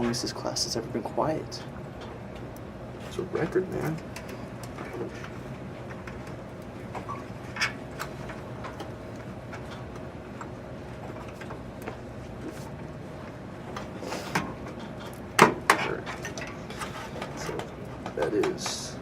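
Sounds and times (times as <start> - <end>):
room hum: 0.0 - 19.0.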